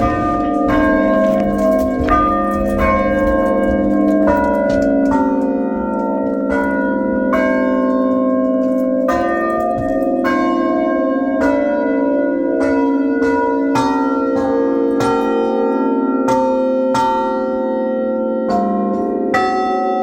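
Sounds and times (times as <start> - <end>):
chime of tuned bells: 0.0 - 20.0.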